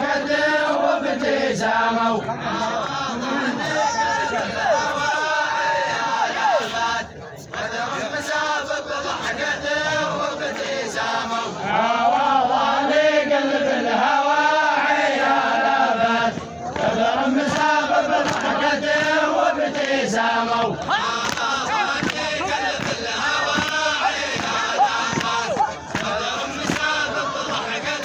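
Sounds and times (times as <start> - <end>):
men chanting in unison: 0.0 - 28.0.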